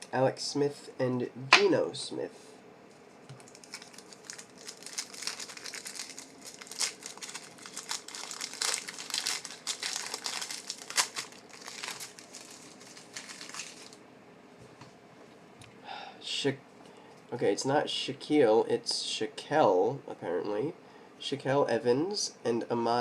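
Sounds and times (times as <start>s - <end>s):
foil wrapper crinkling: 3.3s - 14.0s.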